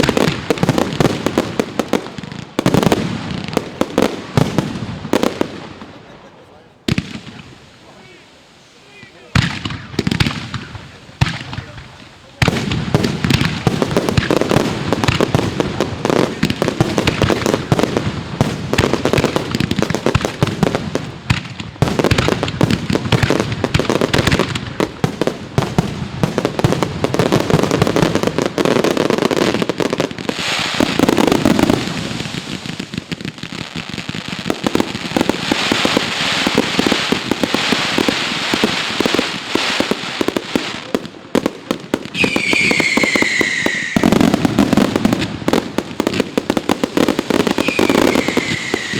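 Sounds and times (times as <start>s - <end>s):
fireworks banging and crackling: 0.0s - 48.9s
firework falling whistle: 9.6s - 11.0s, 42.2s - 44.3s, 47.5s - 48.9s.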